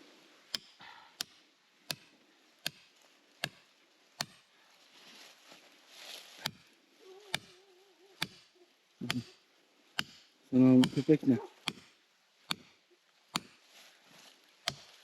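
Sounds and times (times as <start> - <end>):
faint rustling: 2.2 - 8.8, 13.5 - 15.0.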